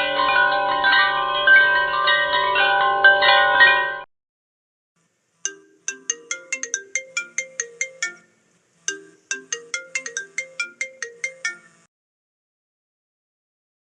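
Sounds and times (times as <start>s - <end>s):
phone ringtone melody: 5.5s - 11.9s.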